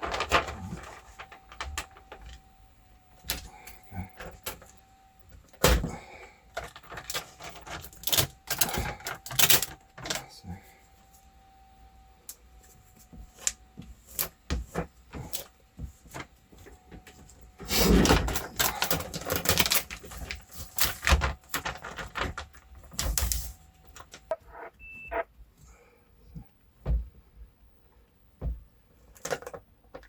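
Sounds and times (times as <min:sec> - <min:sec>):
rustling and scraping: 0:00.0 - 0:02.5.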